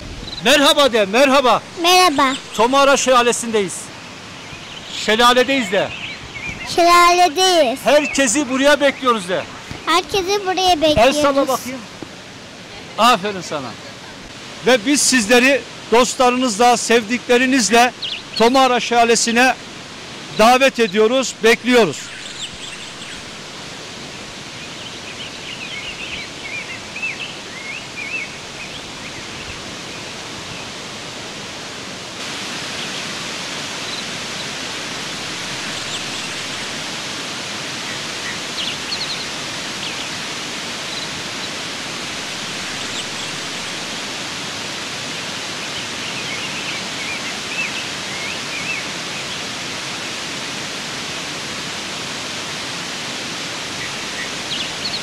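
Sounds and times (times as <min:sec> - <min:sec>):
waterfall roaring: 0:00.0 - 0:55.0
small bird chirps: 0:00.2 - 0:00.5.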